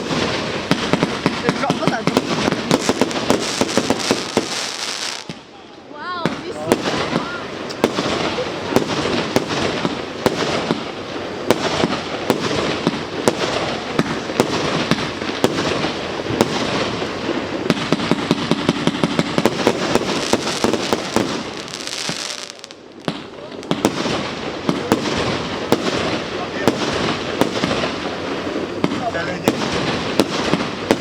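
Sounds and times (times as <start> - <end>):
fireworks crackling and banging: 0.0 - 31.0.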